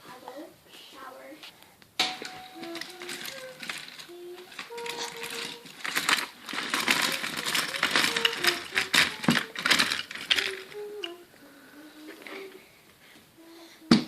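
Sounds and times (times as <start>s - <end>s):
toy trains clicking and clattering: 2.0s - 11.3s.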